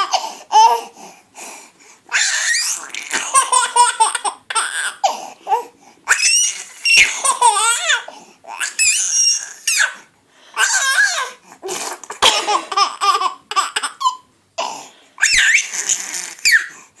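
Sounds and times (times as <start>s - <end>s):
baby laughing: 2.1s - 5.1s, 6.1s - 10.0s, 10.6s - 14.2s
adult coughing: 12.0s - 12.8s.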